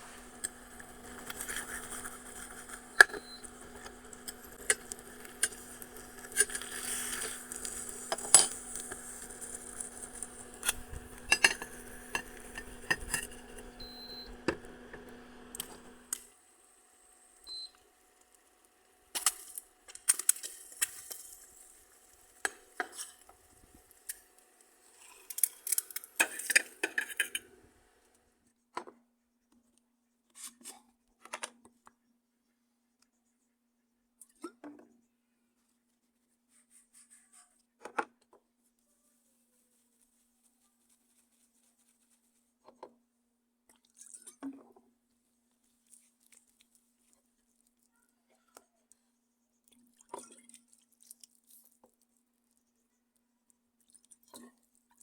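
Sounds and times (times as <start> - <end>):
metal utensils scraping a pan: 0.0 - 16.2, 25.1 - 27.4
steady hum: 0.0 - 16.2.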